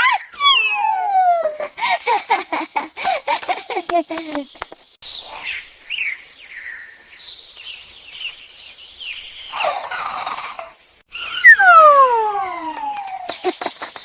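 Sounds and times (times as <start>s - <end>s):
cartoon bird chirping: 0.0s - 1.7s, 11.2s - 13.4s
lower bird call: 0.3s - 1.6s, 9.1s - 13.3s.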